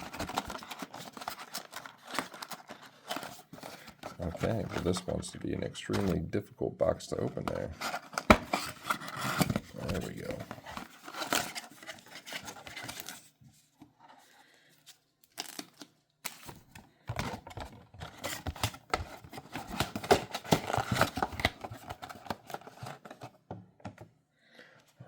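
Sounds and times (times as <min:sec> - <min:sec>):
packaging crinkling and tearing: 0:00.0 - 0:05.3, 0:15.2 - 0:16.8.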